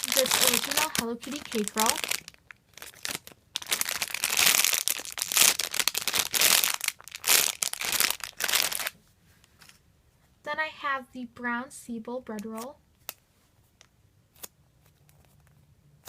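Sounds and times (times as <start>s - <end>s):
plastic packaging crinkling: 0.0s - 9.0s.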